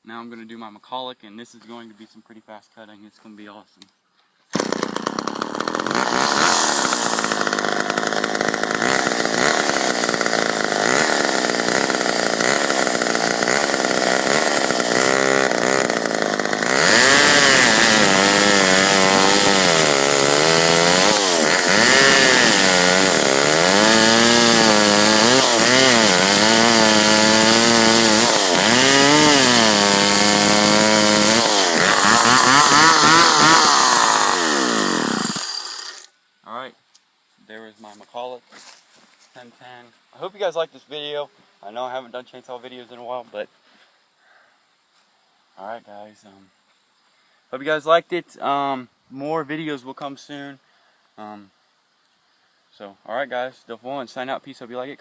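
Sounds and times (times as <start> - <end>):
chainsaw cutting wood: 4.5 - 36.1.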